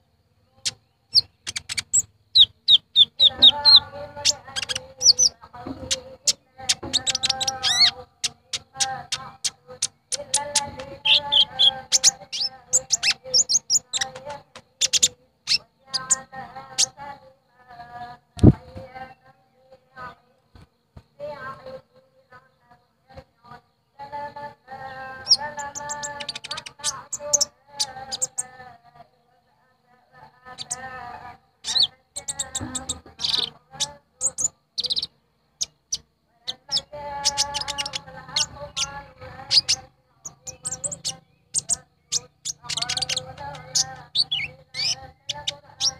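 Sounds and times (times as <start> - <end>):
sunbird chirping and whistling: 0.6 - 17.0, 25.2 - 28.6, 31.6 - 45.9
person chanting: 3.0 - 20.5, 21.1 - 35.2, 36.2 - 45.9.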